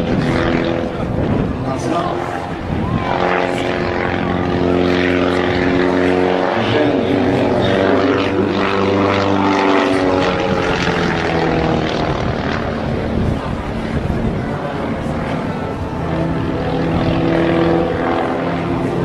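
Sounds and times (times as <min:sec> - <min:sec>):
propeller airplane engine droning: 0:00.0 - 0:19.0.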